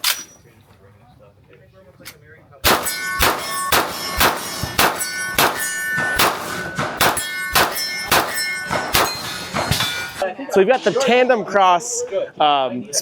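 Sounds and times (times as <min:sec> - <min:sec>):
gunshots: 0:02.6 - 0:10.2
steel targets ringing: 0:02.6 - 0:10.2.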